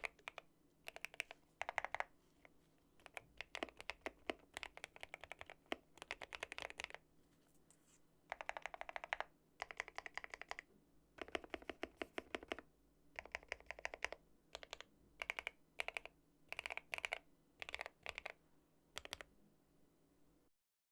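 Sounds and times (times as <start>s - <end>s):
typing on mechanical keyboard: 0.0s - 2.1s, 3.0s - 7.0s, 8.3s - 12.6s, 13.2s - 18.4s, 19.0s - 19.3s.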